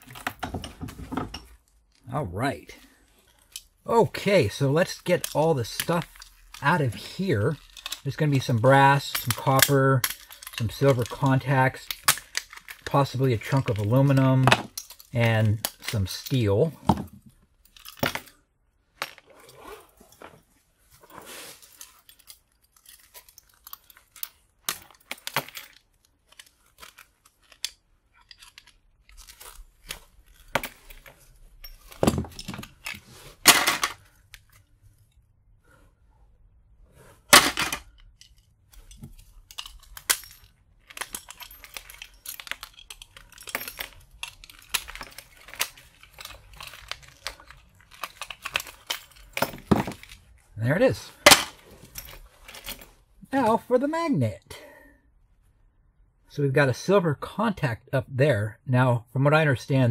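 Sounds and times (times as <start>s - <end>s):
small metal parts clinking: 2.7s - 20.4s, 21.0s - 35.2s, 37.3s - 53.0s.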